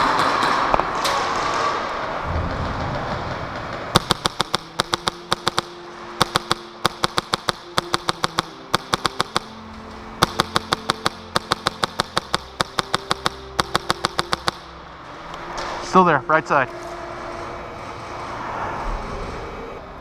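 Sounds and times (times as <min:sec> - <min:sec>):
airsoft rifle firing: 0:03.6 - 0:09.5, 0:10.2 - 0:14.8.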